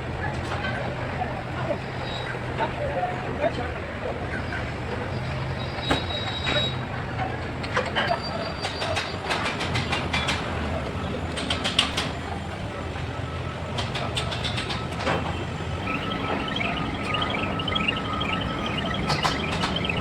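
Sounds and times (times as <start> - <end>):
mechanical hum: 15.4 - 20.0.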